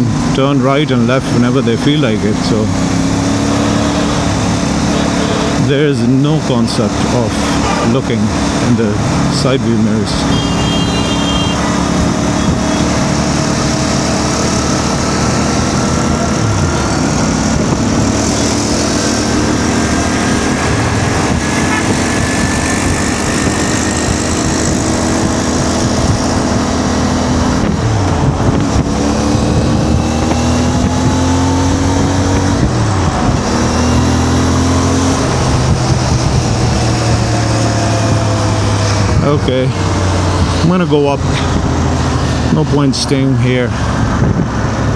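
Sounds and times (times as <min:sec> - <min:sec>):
motorcycle engine running: 0:00.0 - 0:44.9
wind rushing: 0:07.5 - 0:42.5.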